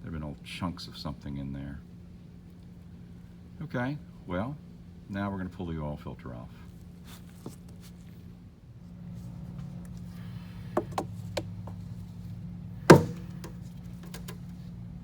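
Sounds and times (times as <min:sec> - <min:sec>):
steady low hum: 0:00.0 - 0:15.0
loud knock: 0:12.9 - 0:13.5.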